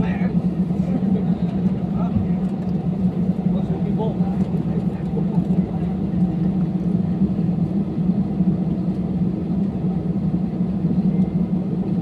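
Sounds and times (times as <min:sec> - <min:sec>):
airliner cabin engine drone: 0:00.0 - 0:12.0.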